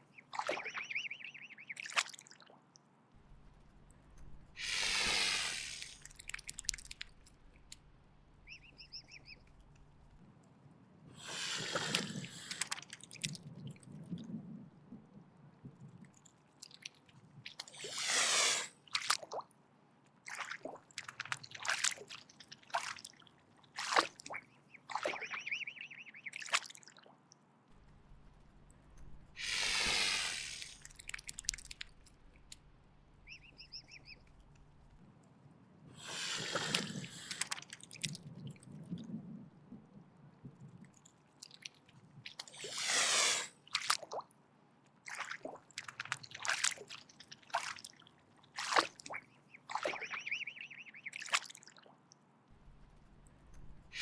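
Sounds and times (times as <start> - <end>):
swan hissing: 4.6 - 6.6, 11.2 - 12.7, 17.7 - 18.8, 29.1 - 32.3, 36.0 - 37.6, 42.5 - 43.6, 53.7 - 54.0.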